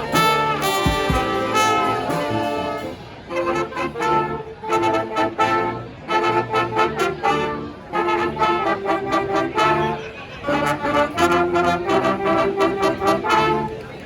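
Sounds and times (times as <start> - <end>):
low bass notes: 0.0 - 3.6
trumpets and trombones riff: 0.0 - 13.8.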